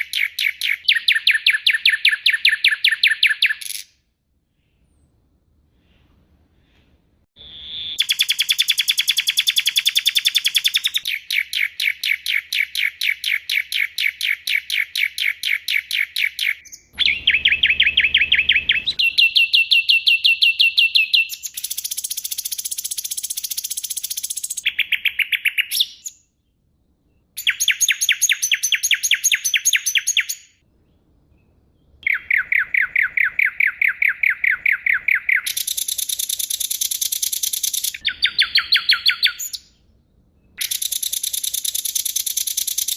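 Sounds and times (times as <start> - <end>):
songbird rapid repeated notes: 32.0 - 39.5.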